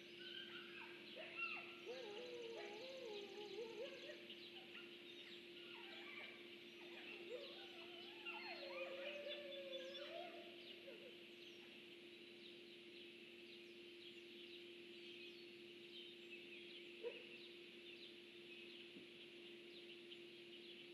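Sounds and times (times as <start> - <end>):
faint high chirping: 0.0 - 12.6
wolf howling: 0.2 - 5.0, 5.6 - 11.2.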